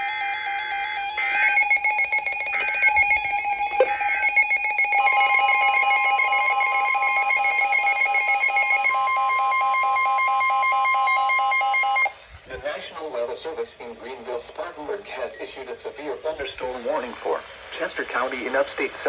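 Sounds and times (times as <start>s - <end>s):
data bursts: 0.0s - 12.1s
radio alarms beeping in fast pulses: 0.0s - 12.1s, 15.4s - 15.6s
steady warning alarm tone: 0.0s - 12.2s.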